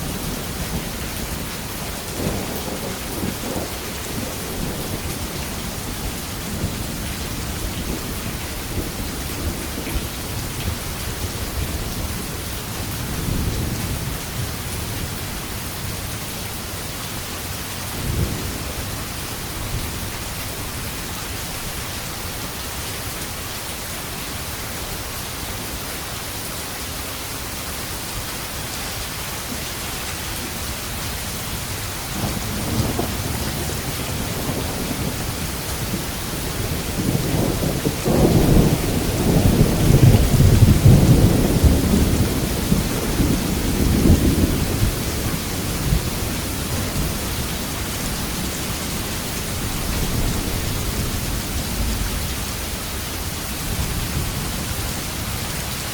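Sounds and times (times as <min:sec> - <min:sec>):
rolling rumble of thunder: 0:00.0 - 0:16.5, 0:17.1 - 0:21.6, 0:30.5 - 0:55.5
steady rain: 0:00.0 - 0:55.9.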